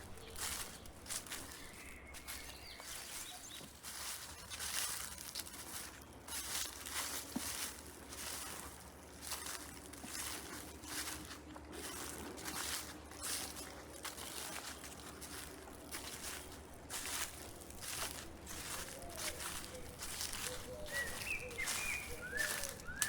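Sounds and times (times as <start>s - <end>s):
footsteps crunching dry leaves: 0.0s - 23.0s.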